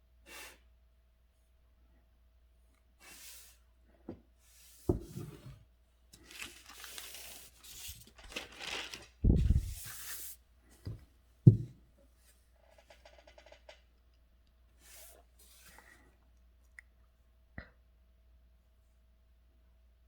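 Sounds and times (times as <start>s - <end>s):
brush swishes on paper: 9.3s - 10.4s.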